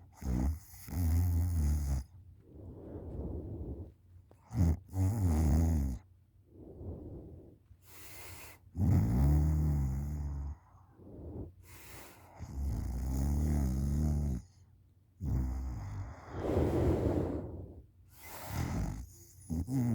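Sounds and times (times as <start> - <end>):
person snoring: 8.8 - 11.5, 12.4 - 14.4, 15.2 - 19.9.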